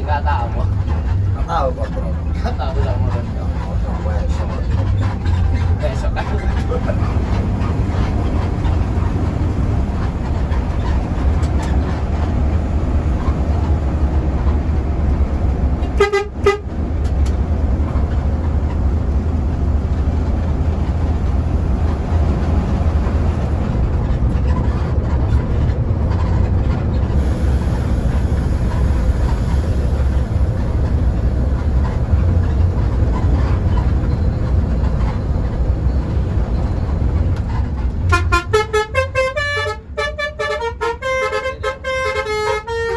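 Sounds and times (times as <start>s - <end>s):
bus engine drone: 0.0s - 42.9s
road noise: 0.0s - 42.9s
musical bus horn: 15.9s - 16.8s, 38.1s - 42.9s.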